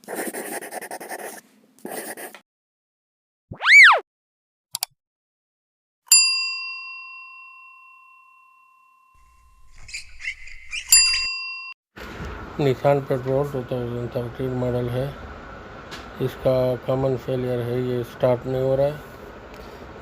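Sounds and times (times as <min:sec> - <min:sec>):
swoop up and down in pitch: 0:03.5 - 0:04.1
clicks: 0:04.7 - 0:04.9
bell ding: 0:06.1 - 0:09.4, 0:11.0 - 0:11.7.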